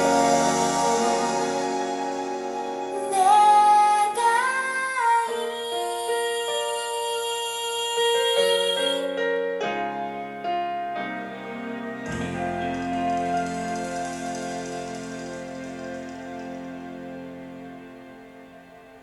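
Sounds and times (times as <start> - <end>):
piano chords: 0.0 - 19.0
woman singing: 2.9 - 9.5.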